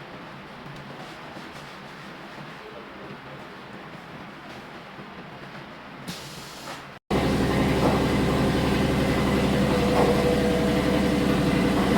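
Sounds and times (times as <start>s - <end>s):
machine humming loudly: 7.1s - 11.9s.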